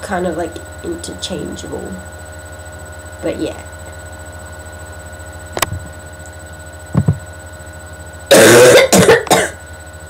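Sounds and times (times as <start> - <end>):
person coughing hard: 8.3 - 9.6
throat clearing sound: 8.3 - 9.6.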